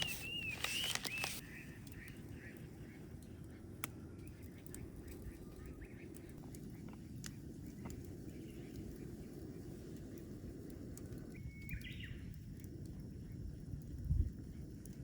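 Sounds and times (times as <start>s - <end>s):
faint bird chirps: 0.0s - 3.6s
wood fire crackling: 0.0s - 15.0s.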